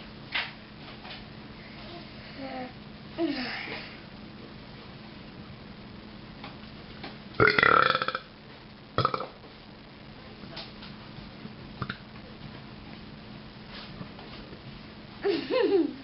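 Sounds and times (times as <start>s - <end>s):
person burping: 7.4s - 8.3s, 9.0s - 9.4s.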